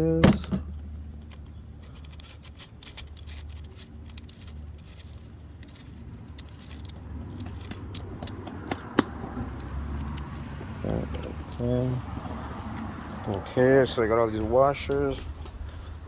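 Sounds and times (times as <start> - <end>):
washers and screws clinking: 8.2 - 12.2, 12.9 - 15.4.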